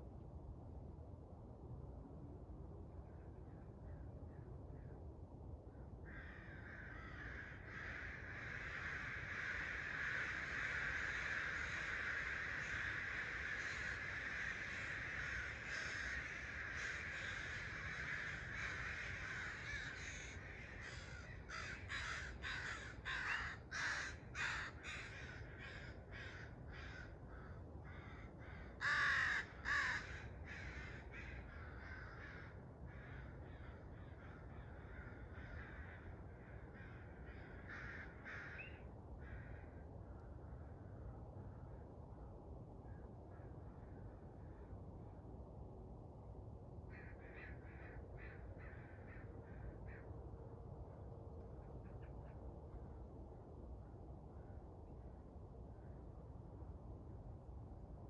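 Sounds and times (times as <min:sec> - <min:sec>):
birds calling: 0:06.2 - 0:28.2.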